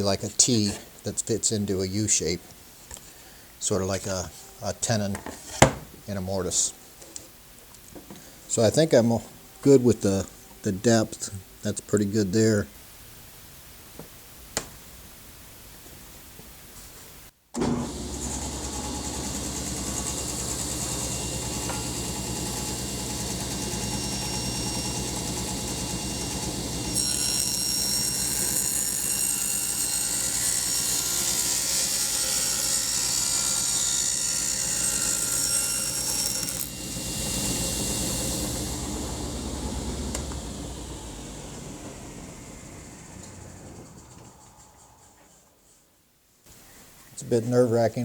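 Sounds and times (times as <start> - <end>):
table saw spinning: 17.6 - 45.3
saw blade cutting wood: 17.9 - 45.1.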